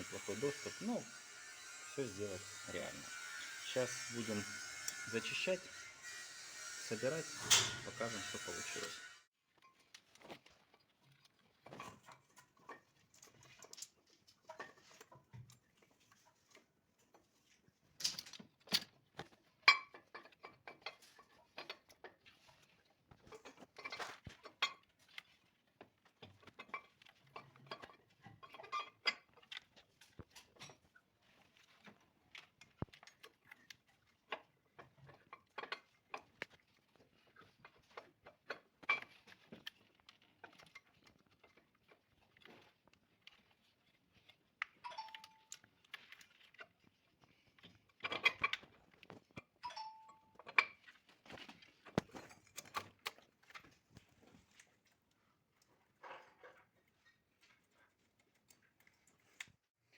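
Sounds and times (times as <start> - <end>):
hand tools clinking on metal: 0.0 - 9.2, 44.8 - 45.7.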